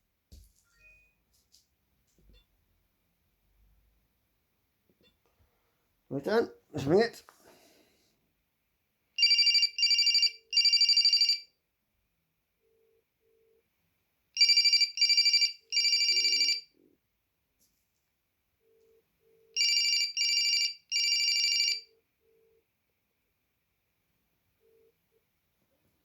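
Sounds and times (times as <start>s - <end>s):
phone ringing with buzzy trill: 9.2s - 11.5s, 14.4s - 16.7s, 18.7s - 22.6s.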